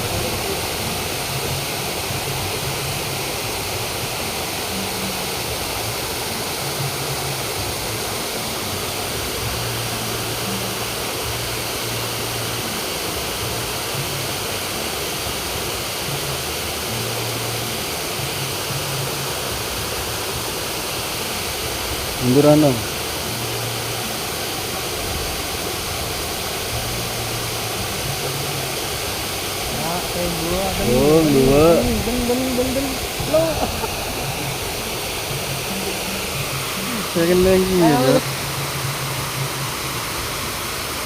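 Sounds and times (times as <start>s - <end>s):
steady rushing noise: 24.0s - 41.0s.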